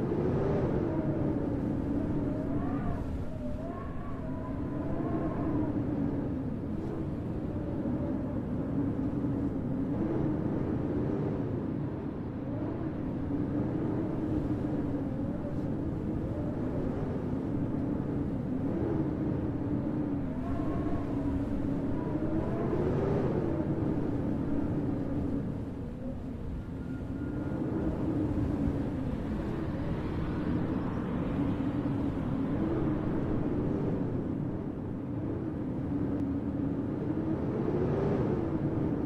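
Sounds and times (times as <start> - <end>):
howling wind: 0.0 - 39.0.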